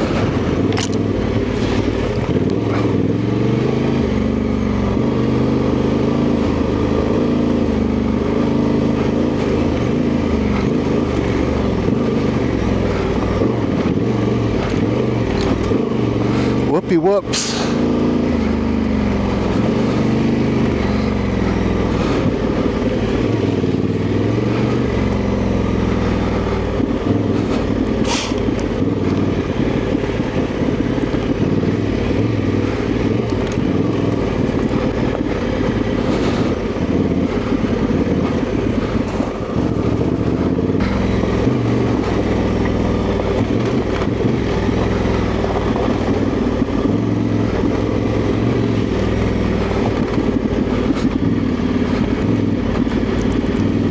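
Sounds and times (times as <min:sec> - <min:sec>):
motorcycle engine running: 0:00.0 - 0:53.9.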